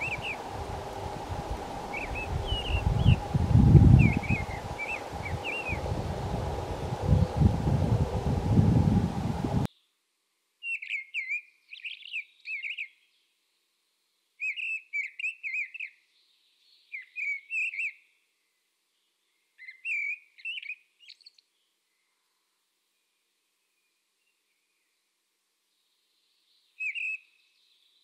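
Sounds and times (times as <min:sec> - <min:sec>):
rush of wind-like noise: 0:00.0 - 0:09.7
songbird singing: 0:00.0 - 0:28.0.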